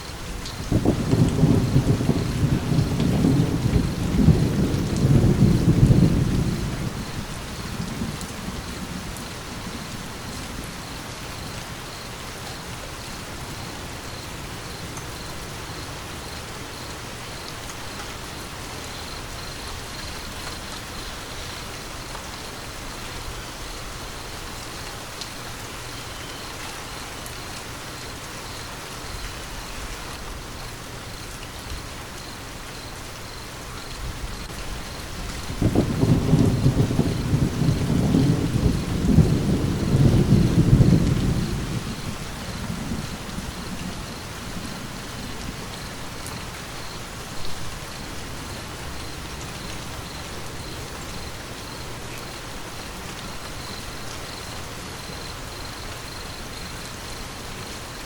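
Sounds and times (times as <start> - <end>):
steady rain falling: 0.0 - 58.0
low thunder rumble: 0.2 - 10.9, 34.0 - 51.8.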